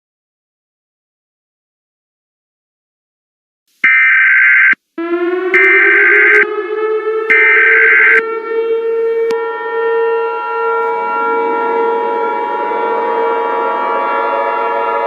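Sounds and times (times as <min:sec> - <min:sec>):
screeching digital header bursts: 0:03.8 - 0:04.8, 0:05.6 - 0:06.4, 0:07.3 - 0:08.2
siren winding up: 0:03.8 - 0:12.8
two-tone attention signal: 0:05.6 - 0:06.5, 0:07.3 - 0:08.2.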